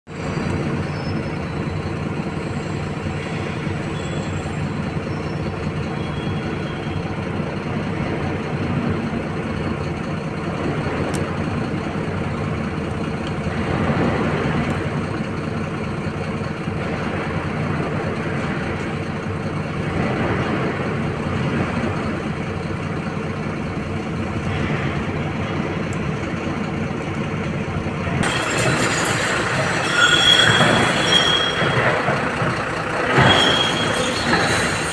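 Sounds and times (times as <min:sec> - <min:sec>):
excavator diesel engine working: 0:00.1 - 0:34.9
bright harsh noise: 0:28.2 - 0:34.9.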